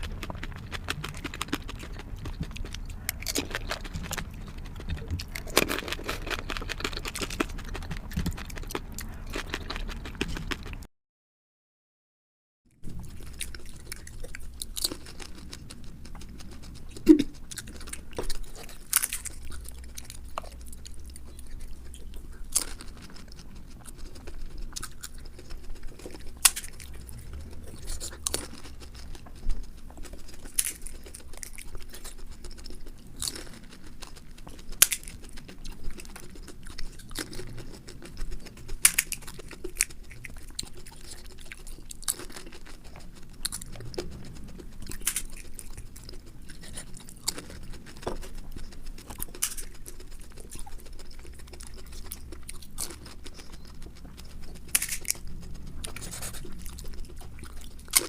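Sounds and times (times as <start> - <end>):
crisp shells crunching: 0.0 - 10.8, 13.0 - 58.0
faint low hum: 0.0 - 10.9, 12.7 - 58.0.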